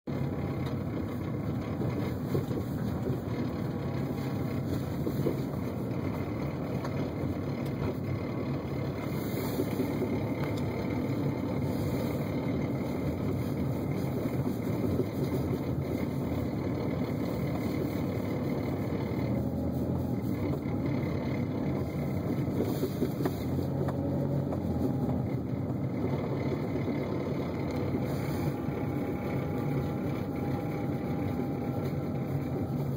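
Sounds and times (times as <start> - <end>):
car running noise: 0.0 - 32.9.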